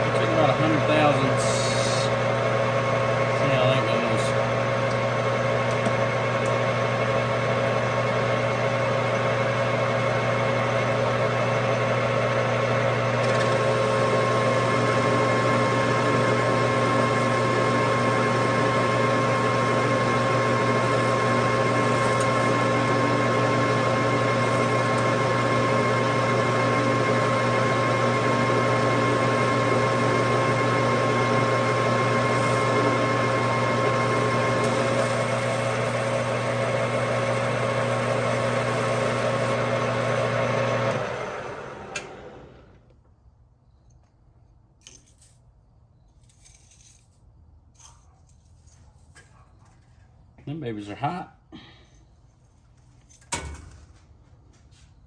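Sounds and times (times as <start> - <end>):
metal lathe running: 0.0 - 42.6.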